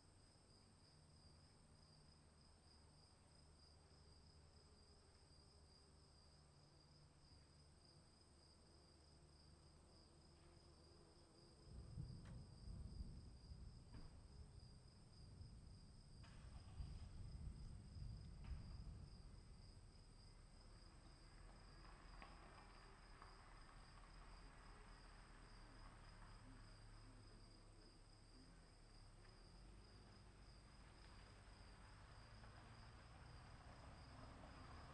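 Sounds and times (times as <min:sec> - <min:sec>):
crickets chirring: 0:00.2 - 0:34.9
distant thunder rumble: 0:11.7 - 0:22.1.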